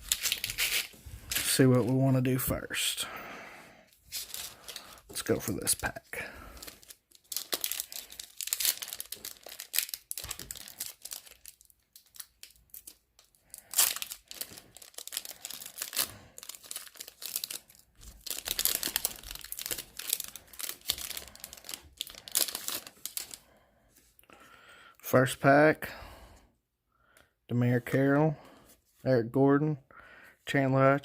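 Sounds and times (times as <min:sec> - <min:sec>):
card pack wrapper crinkling and tearing: 0:00.0 - 0:02.0, 0:04.1 - 0:23.5.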